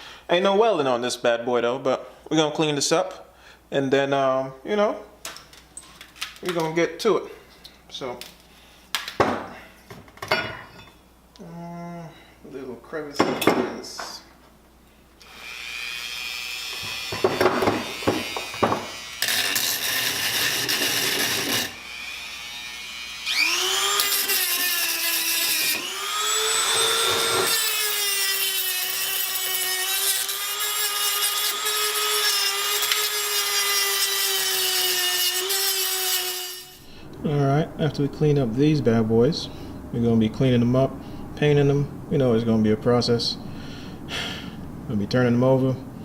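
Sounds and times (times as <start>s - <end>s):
electric power tool whining: 15.2s - 36.9s.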